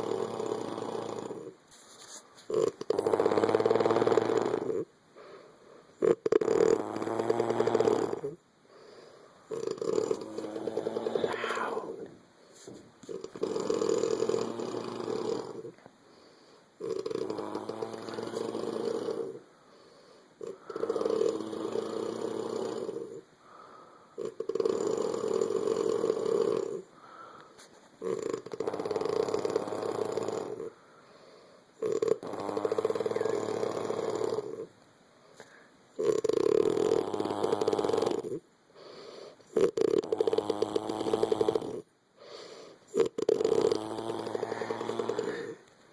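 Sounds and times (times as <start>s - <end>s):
loud rattling snores: 0.0s - 1.6s, 2.5s - 4.9s, 6.0s - 8.4s, 9.5s - 12.1s, 13.0s - 15.8s, 16.8s - 19.4s, 20.4s - 23.2s, 24.2s - 26.9s, 28.0s - 30.8s, 31.8s - 34.7s, 36.0s - 38.4s, 39.5s - 41.9s, 42.9s - 45.6s
quiet breaths: 0.0s - 45.9s.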